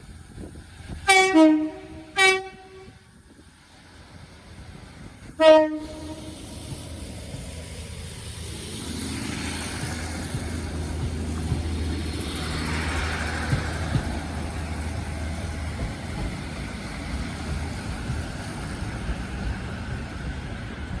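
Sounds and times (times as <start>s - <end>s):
passing train running noise: 0.0s - 21.0s
train horn blast: 1.0s - 3.0s, 5.4s - 6.4s.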